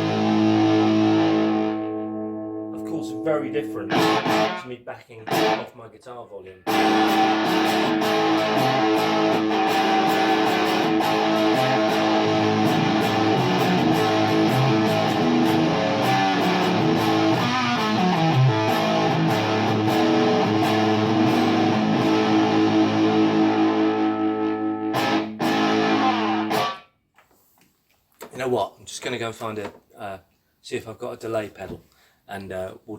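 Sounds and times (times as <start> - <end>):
fuzz electric guitar chords: 0.0 - 4.7, 5.3 - 5.7, 6.6 - 26.9.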